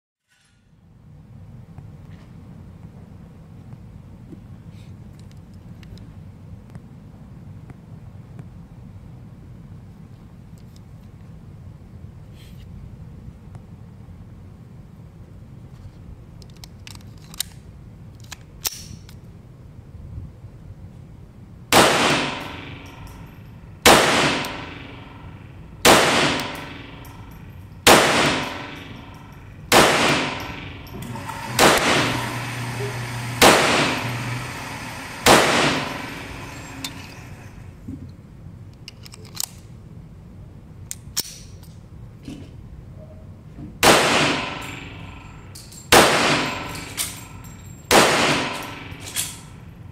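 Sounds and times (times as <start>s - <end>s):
pistol shots echoing: 21.7s - 37.5s, 43.8s - 49.6s
small clicks: 38.7s - 39.7s.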